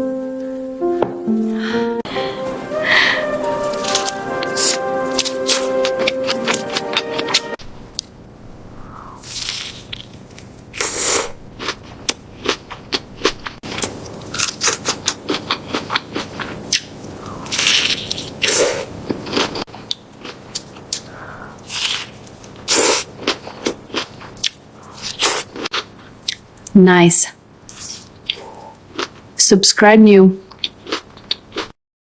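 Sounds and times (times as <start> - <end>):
meat being chewed: 3.6 - 8.1, 9.2 - 26.4, 27.7 - 29.2, 30.5 - 31.7.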